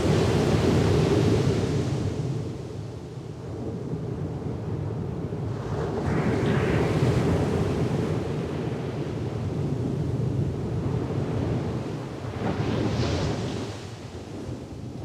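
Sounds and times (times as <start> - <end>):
surf rumbling: 0.0 - 2.2.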